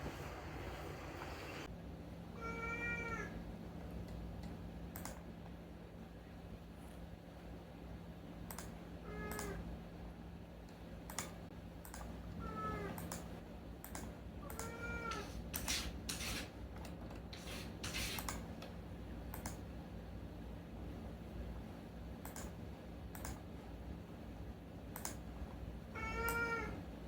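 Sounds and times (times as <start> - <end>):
steady low hum: 0.0 - 2.4
cat meowing: 2.4 - 3.4, 14.5 - 15.4, 26.0 - 26.8.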